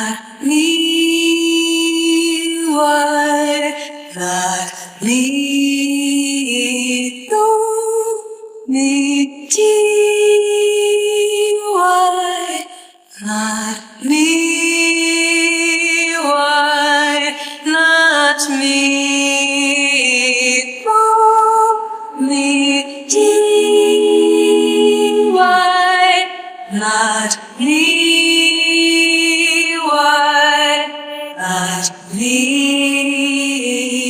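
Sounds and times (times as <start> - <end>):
harmony voices: 20.9 - 29.8, 31.3 - 34.0
woman singing long notes: 22.2 - 30.0.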